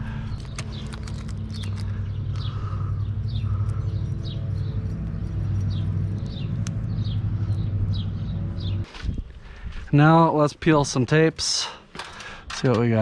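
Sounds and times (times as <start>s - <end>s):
low mechanical hum: 0.0s - 8.9s
bird chirping: 0.0s - 9.2s.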